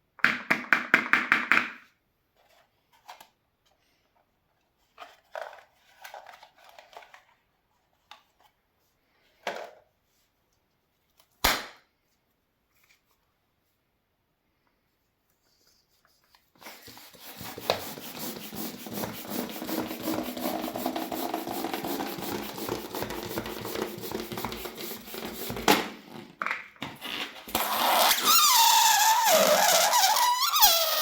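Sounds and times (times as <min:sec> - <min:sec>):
balloon rubber rubbing: 0:16.6 - 0:26.3, 0:27.0 - 0:31.0
air rushing into balloon: 0:16.8 - 0:25.5
air squealing out of balloon: 0:27.5 - 0:31.0.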